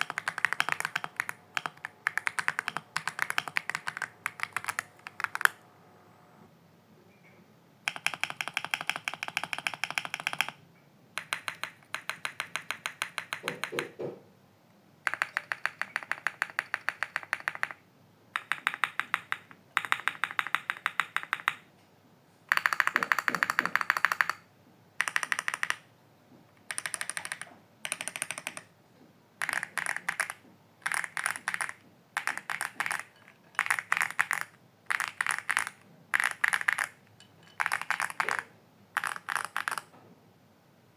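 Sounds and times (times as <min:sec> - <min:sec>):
computer keyboard typing: 0:00.0 - 0:05.6, 0:07.8 - 0:10.6, 0:11.2 - 0:14.0, 0:15.0 - 0:17.8, 0:18.4 - 0:21.6, 0:22.5 - 0:25.9, 0:26.6 - 0:28.7, 0:29.4 - 0:39.9.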